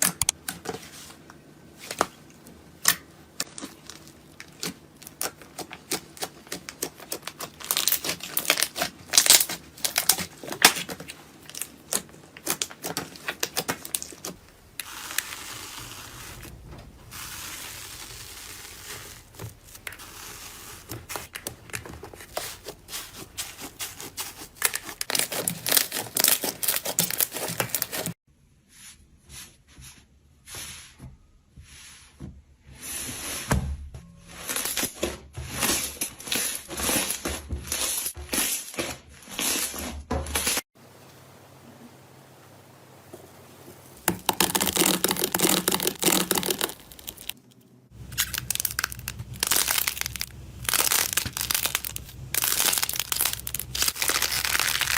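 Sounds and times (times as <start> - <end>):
slime crackling and popping: 2.8 - 21.8, 23.6 - 28.2, 44.0 - 54.9.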